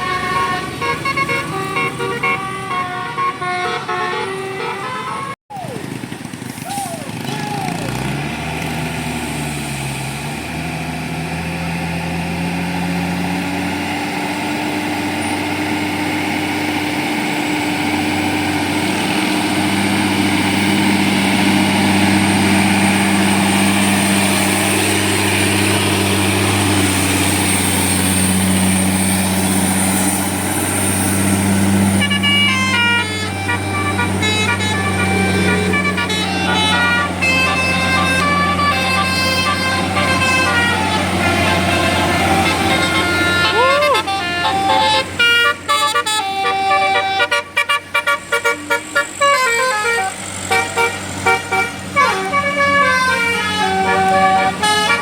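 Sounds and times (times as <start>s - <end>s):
musical air horn melody: 0.0s - 5.4s, 31.6s - 55.0s
heavy bus engine running: 0.0s - 55.0s.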